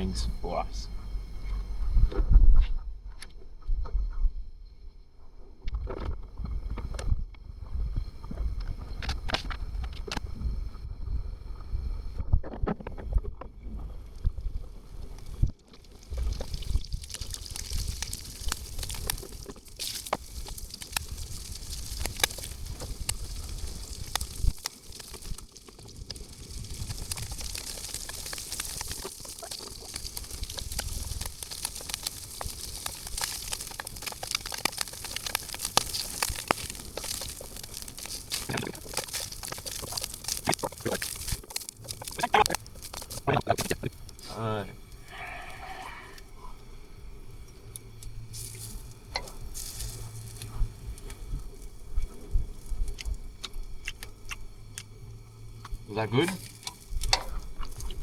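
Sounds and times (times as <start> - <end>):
low wind rumble on microphone: 0.0 - 58.0
food sizzling in hot oil: 15.0 - 58.0.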